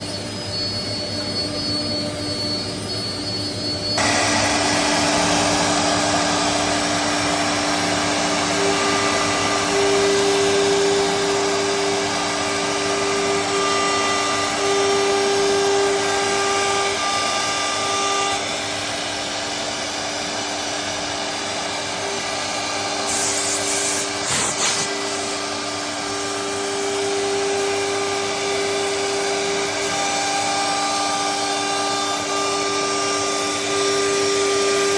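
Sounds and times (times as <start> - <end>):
router spindle whine: 0.0 - 34.9
router bit cutting wood: 3.9 - 34.9.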